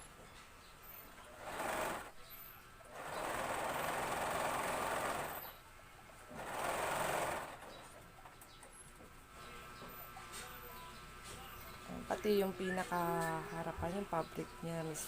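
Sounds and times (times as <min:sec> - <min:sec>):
sewing machine stitching: 0:01.4 - 0:02.2, 0:02.9 - 0:05.5, 0:06.3 - 0:07.9.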